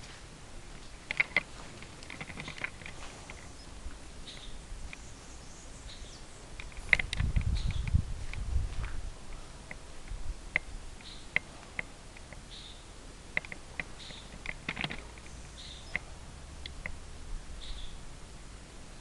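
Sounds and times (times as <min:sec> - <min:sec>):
sharp clicks and snaps: 0:00.8 - 0:03.6, 0:06.5 - 0:09.0, 0:09.7 - 0:12.5, 0:13.3 - 0:17.0.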